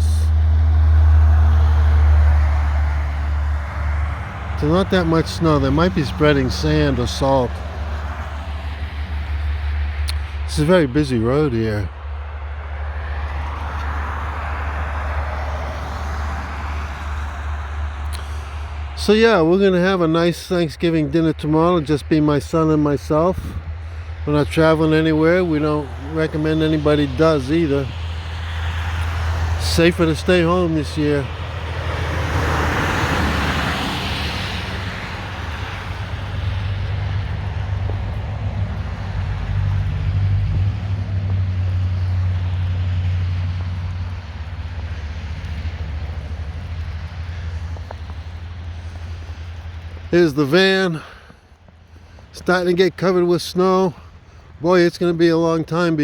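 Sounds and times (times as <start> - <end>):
vehicle driving past: 0.0 - 56.0.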